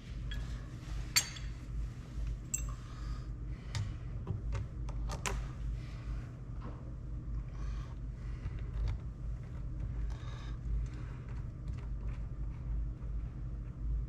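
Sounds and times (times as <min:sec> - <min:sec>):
steady low hum: 0:00.0 - 0:14.0
metal hardware clinking: 0:02.5 - 0:02.8.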